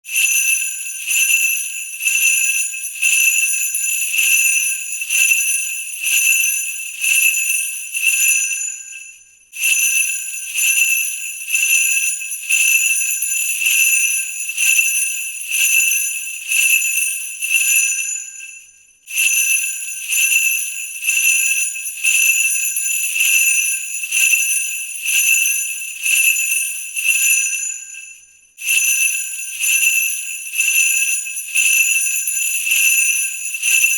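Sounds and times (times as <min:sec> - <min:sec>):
sleigh bells jingling: 0:28.7 - 0:33.9.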